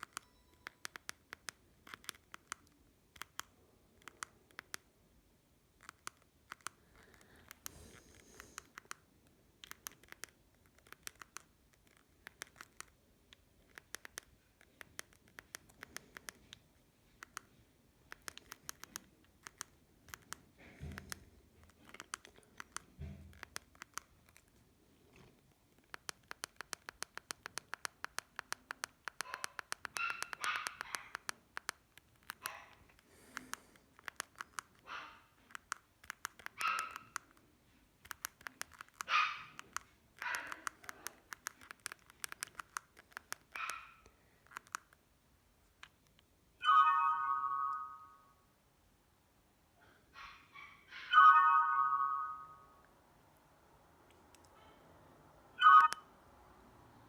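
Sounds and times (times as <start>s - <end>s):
phone keypad button clicks: 55.6s - 56.0s.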